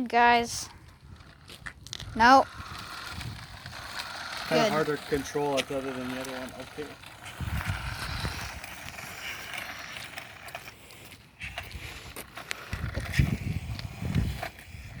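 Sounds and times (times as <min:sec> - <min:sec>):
toy car motor rattling: 0:00.2 - 0:15.0
wind on microphone: 0:00.5 - 0:04.0, 0:07.2 - 0:09.1, 0:12.7 - 0:15.0.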